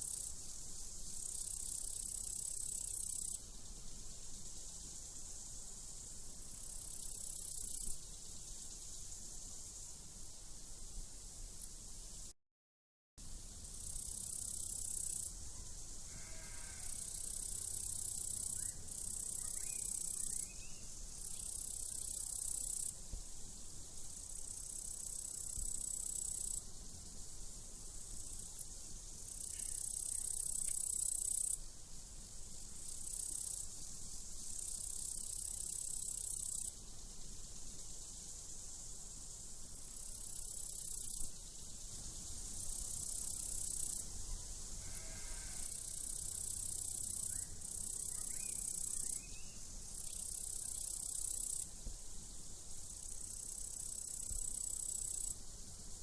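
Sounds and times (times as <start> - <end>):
crickets trilling: 0.0 - 10.3, 13.4 - 56.0
sheep bleating: 44.9 - 45.7.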